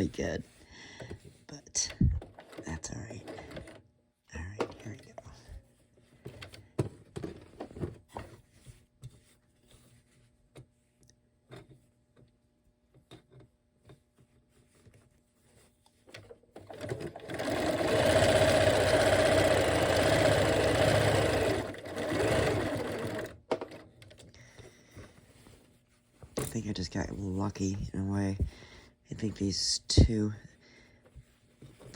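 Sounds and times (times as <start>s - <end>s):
sewing machine running: 16.6s - 23.8s.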